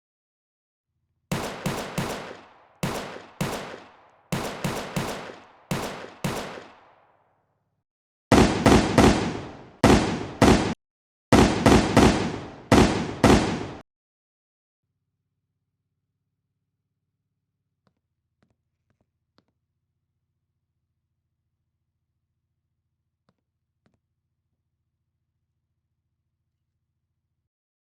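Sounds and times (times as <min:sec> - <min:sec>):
gunshots with echo: 0:01.3 - 0:07.2, 0:08.3 - 0:13.8.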